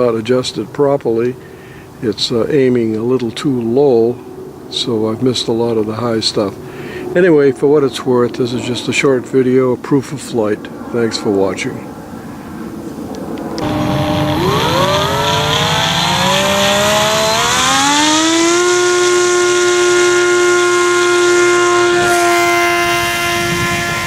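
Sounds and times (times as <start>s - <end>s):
model plane motor whine: 13.4s - 24.0s.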